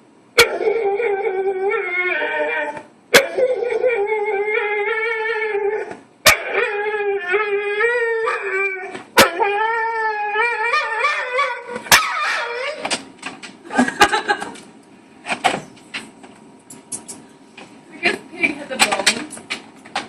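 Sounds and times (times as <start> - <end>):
dog whining howls: 0.4 - 12.9.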